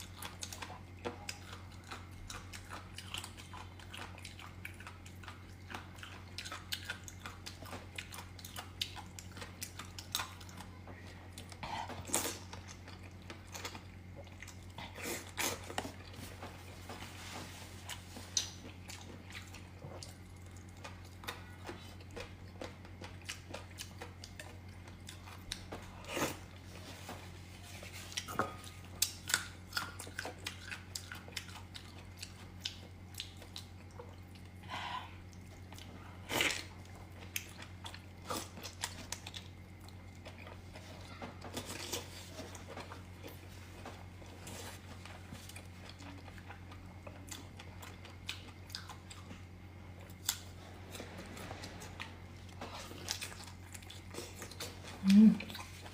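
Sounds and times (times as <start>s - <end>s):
wet chewing and biting: 35.2s - 55.9s
low hum: 42.4s - 55.9s.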